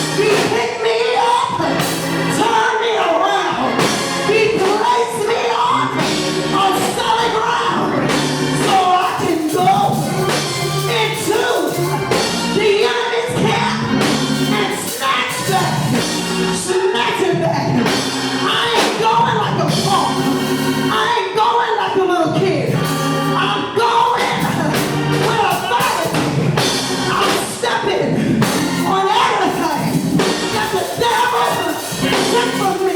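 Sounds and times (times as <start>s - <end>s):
live band with drums: 0.0s - 0.9s, 1.6s - 2.7s, 3.5s - 21.1s, 22.3s - 32.9s
church singing: 0.0s - 32.9s.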